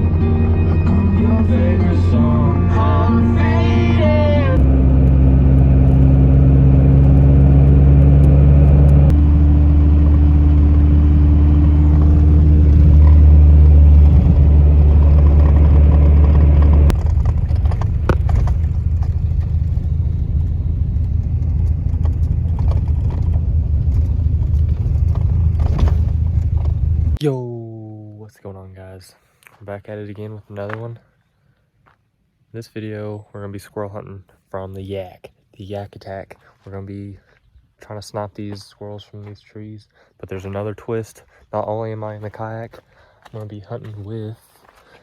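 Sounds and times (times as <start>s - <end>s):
music with singing: 0.0s - 4.6s
car engine hum: 0.0s - 27.2s
road noise rumble: 0.0s - 27.2s.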